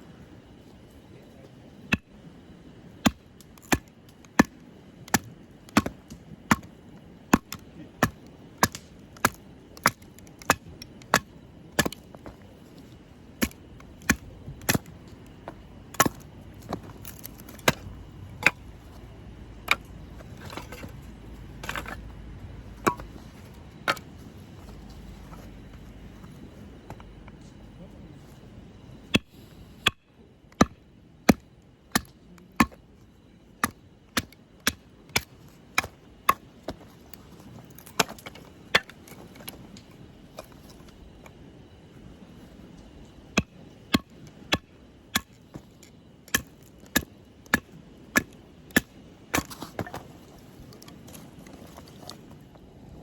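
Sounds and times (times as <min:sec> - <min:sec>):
firewood being chopped: 0:03.0 - 0:18.7, 0:21.6 - 0:22.0, 0:22.8 - 0:24.1, 0:29.1 - 0:32.8, 0:33.6 - 0:39.6, 0:43.3 - 0:50.1.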